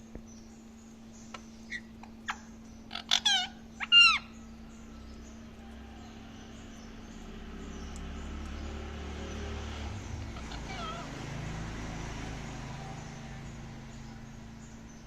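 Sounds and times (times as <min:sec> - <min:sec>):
low background hum: 0:00.0 - 0:15.0
parrot wavering call: 0:01.7 - 0:04.5.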